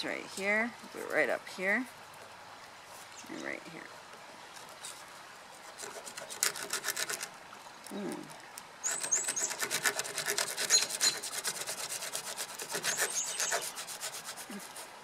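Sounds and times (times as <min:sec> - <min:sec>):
hand saw rasping on wood: 0:05.6 - 0:07.3, 0:08.8 - 0:15.0.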